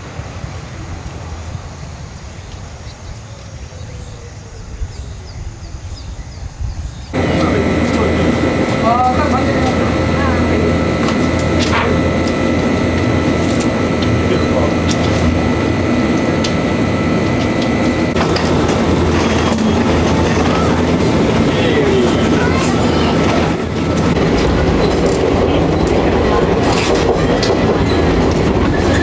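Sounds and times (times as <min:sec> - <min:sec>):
electric train rumbling: 0:07.1 - 0:29.0
wheels clicking over rail joints: 0:07.2 - 0:29.0.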